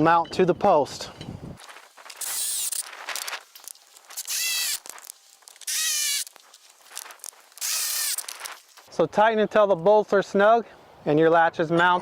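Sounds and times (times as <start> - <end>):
socket wrench squealing strokes: 2.1 - 2.9, 4.1 - 4.9, 5.6 - 6.4, 7.6 - 8.3.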